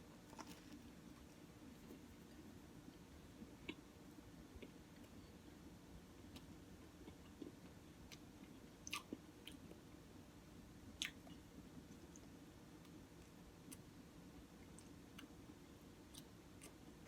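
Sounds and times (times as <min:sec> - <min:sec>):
faint close-up chewing: 0:00.2 - 0:03.9, 0:06.1 - 0:09.8, 0:11.0 - 0:17.0.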